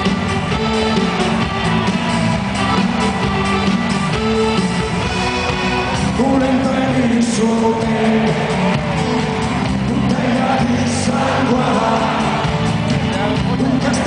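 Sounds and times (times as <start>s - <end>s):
live band music: 0.0s - 14.0s
person singing: 6.1s - 14.0s.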